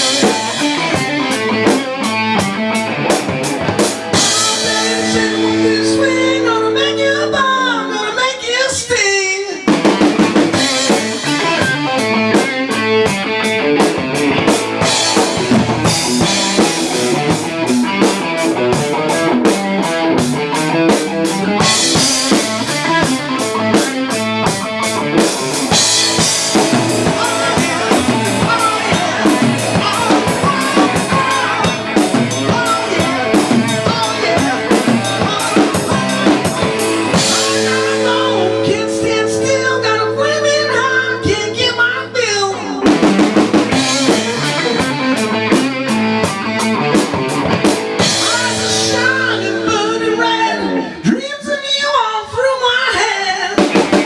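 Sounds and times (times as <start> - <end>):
drum kit: 0.0 - 9.0, 9.6 - 51.2, 53.6 - 54.0
electric guitar riff: 0.0 - 52.4.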